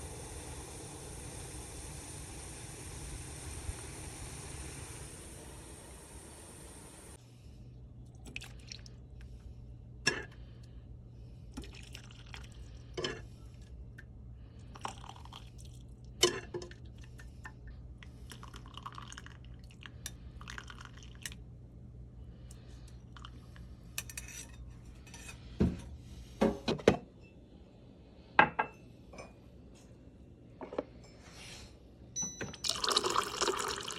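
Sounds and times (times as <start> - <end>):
low steady hum: 0.0 - 33.9.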